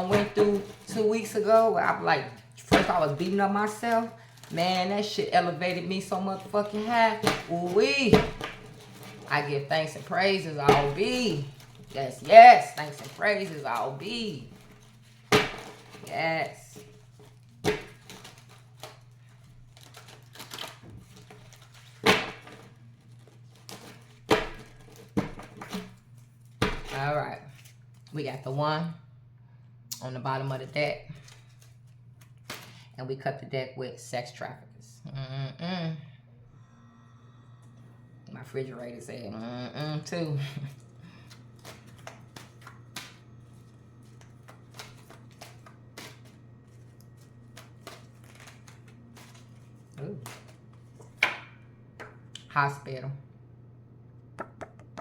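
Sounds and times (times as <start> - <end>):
cards slapping: 0.0 - 27.8, 31.2 - 32.8, 40.8 - 52.5
cards being shuffled: 0.0 - 28.1, 31.2 - 32.8, 40.6 - 52.5
low steady hum: 0.0 - 55.0.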